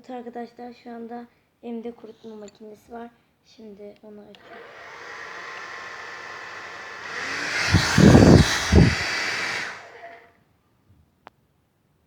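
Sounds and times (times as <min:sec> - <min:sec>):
hair dryer blowing: 0:04.4 - 0:10.2.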